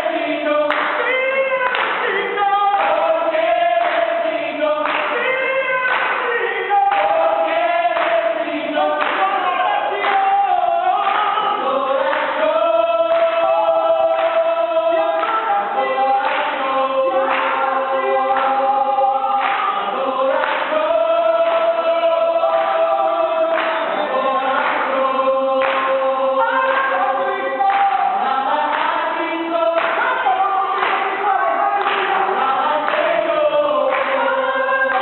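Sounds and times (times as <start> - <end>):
choir singing in harmony: 0.0 - 35.0.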